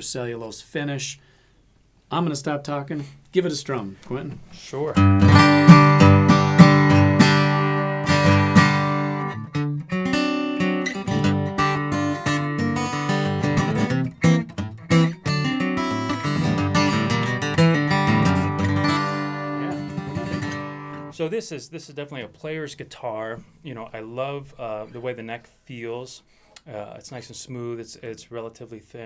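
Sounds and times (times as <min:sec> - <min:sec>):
acoustic guitar strummed chords: 0:05.0 - 0:21.2.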